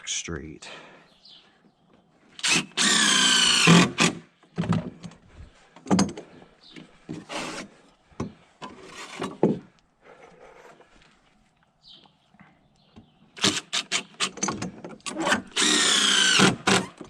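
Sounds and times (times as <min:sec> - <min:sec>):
power drill driving screw: 0:02.4 - 0:04.2, 0:13.4 - 0:17.0.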